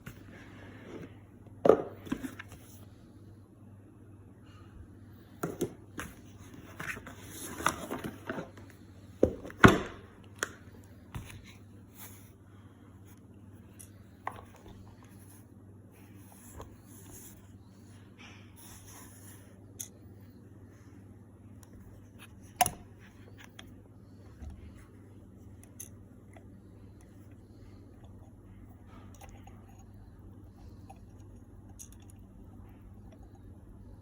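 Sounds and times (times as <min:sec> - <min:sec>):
low steady hum: 0:00.0 - 0:34.0.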